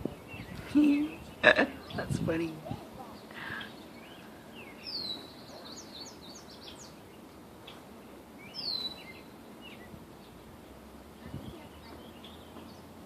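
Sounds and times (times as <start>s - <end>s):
outdoor background noise: 0.0s - 13.0s
high whistled bird calls: 3.0s - 7.8s, 8.4s - 10.4s.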